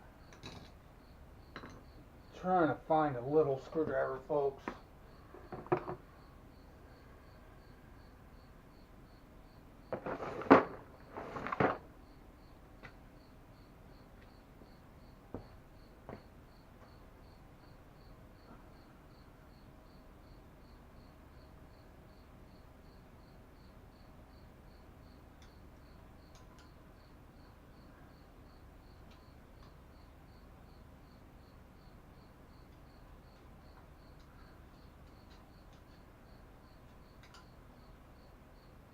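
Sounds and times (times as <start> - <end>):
cricket chirping: 0.0 - 38.9
rummaging and clatter: 9.9 - 11.9.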